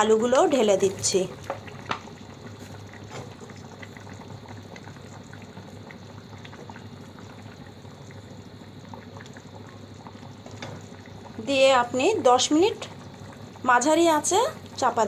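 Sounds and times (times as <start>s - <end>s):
curry bubbling at a boil: 0.0s - 15.0s.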